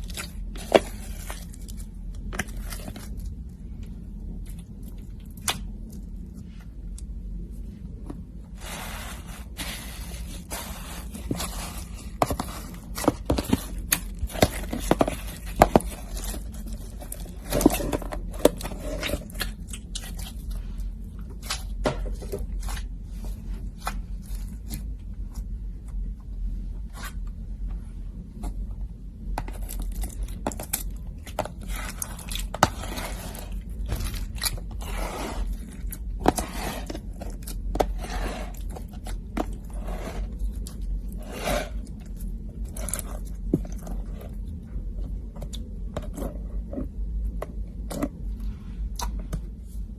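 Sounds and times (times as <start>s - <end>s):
slime scraping: 0.0s - 3.4s, 8.5s - 25.4s, 29.4s - 44.5s
slime being kneaded by hand: 0.0s - 26.2s.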